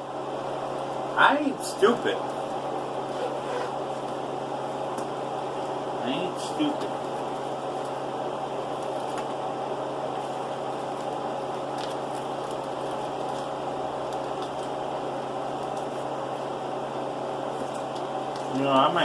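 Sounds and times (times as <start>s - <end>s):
appliance machine hum: 0.0s - 19.0s.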